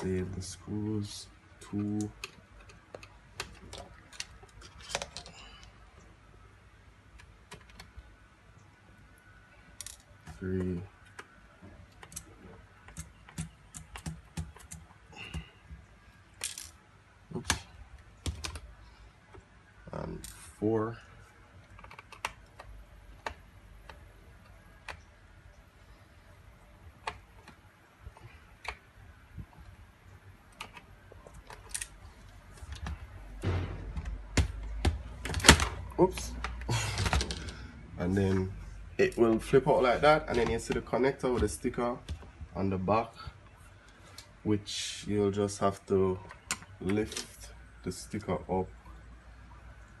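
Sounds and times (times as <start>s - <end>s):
plastic parts handling: 1.6s - 5.7s, 30.5s - 37.7s, 38.3s - 42.3s
panel rustling: 30.6s - 42.5s.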